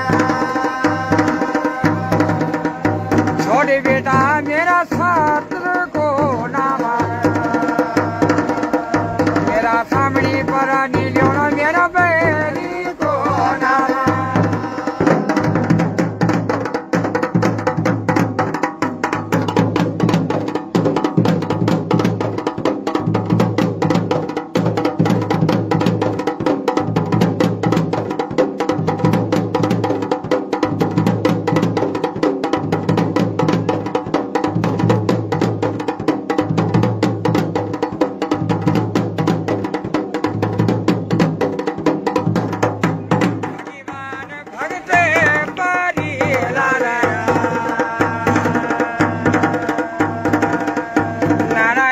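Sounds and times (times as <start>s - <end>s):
person singing: 0.0s - 16.3s, 43.4s - 51.9s
deep drum tone: 0.0s - 22.4s, 44.9s - 51.9s
folk drums playing fast rhythm: 0.0s - 51.9s.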